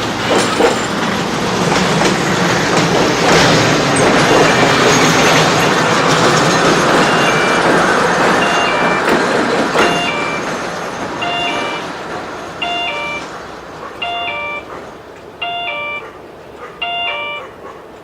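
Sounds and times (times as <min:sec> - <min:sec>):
train passing: 0:00.0 - 0:18.0
railway crossing warning chime: 0:03.8 - 0:17.6.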